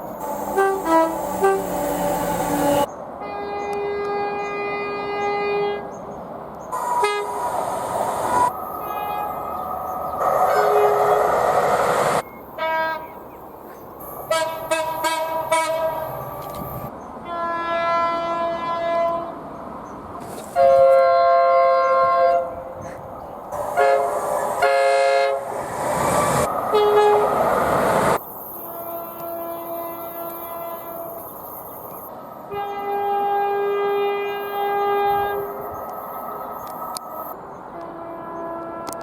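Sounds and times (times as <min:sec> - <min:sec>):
moving train noise: 0:00.0 - 0:39.0
train horn blasts: 0:00.5 - 0:05.9, 0:06.8 - 0:07.4, 0:08.4 - 0:09.6, 0:10.4 - 0:11.5, 0:12.6 - 0:13.2, 0:14.3 - 0:16.2, 0:17.2 - 0:19.4, 0:20.6 - 0:22.7, 0:23.6 - 0:25.5, 0:26.7 - 0:27.4, 0:28.7 - 0:31.2, 0:32.5 - 0:35.7, 0:37.7 - 0:39.0.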